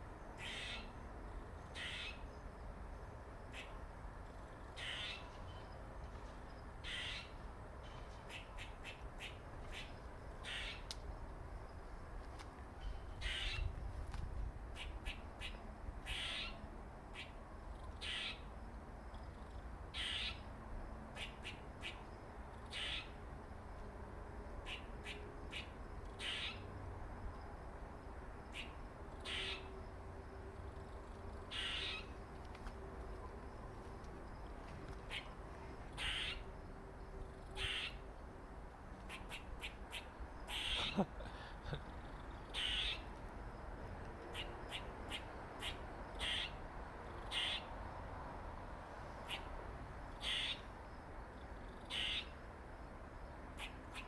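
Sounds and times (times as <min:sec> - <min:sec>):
squirrel raspy hissing calls: 0:00.4 - 0:00.9, 0:01.8 - 0:02.2, 0:04.8 - 0:05.2, 0:06.8 - 0:07.3, 0:10.4 - 0:10.8, 0:16.1 - 0:16.5, 0:18.0 - 0:18.4, 0:20.0 - 0:20.4, 0:22.7 - 0:23.1, 0:26.2 - 0:26.6, 0:28.5 - 0:29.6, 0:31.5 - 0:32.0, 0:36.0 - 0:36.4, 0:37.6 - 0:38.0, 0:39.1 - 0:41.0, 0:42.5 - 0:43.0, 0:44.4 - 0:46.6, 0:47.3 - 0:47.7, 0:49.3 - 0:49.5, 0:50.2 - 0:50.6, 0:51.9 - 0:52.3
squirrel sharp chucks: 0:39.1 - 0:41.4.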